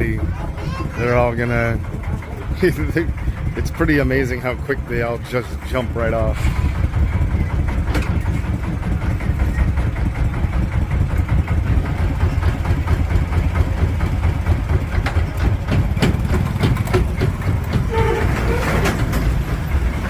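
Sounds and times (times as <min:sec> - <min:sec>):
ferry engine rumbling: 0:00.0 - 0:20.0
sharp knocks: 0:14.9 - 0:19.4.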